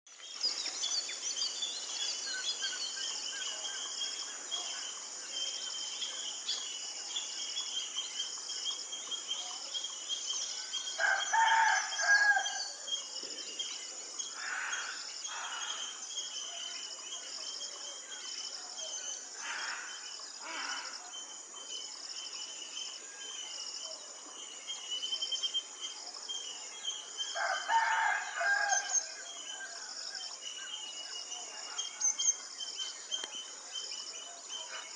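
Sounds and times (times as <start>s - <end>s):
insects chorus: 0.1s - 34.9s
rooster crowing: 11.0s - 12.7s, 27.4s - 29.0s.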